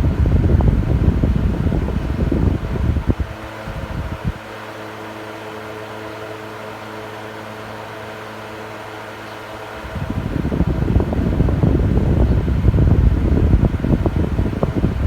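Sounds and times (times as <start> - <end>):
air buffeting microphone: 0.0 - 4.5, 9.8 - 15.0
fan motor hum: 0.0 - 15.0.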